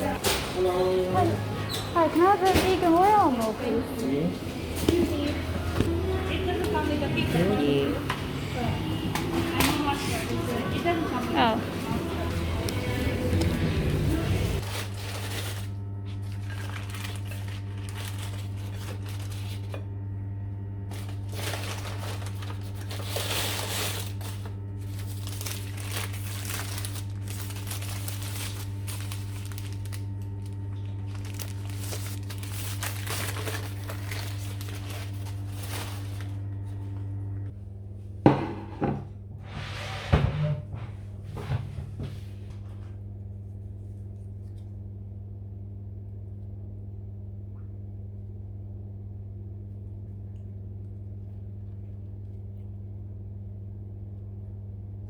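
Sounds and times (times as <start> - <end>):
steady low hum: 0.0 - 55.0
paper wrapper crinkling: 14.6 - 19.8, 20.9 - 37.0.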